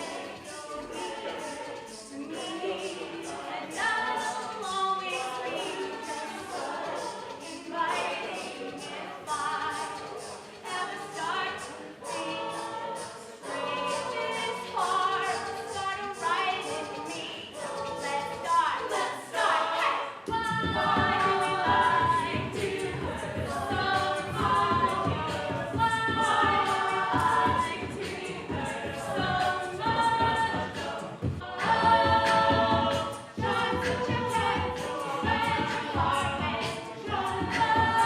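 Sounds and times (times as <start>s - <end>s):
a cappella group singing in harmony: 0.0s - 38.0s
steady beat: 20.3s - 38.0s.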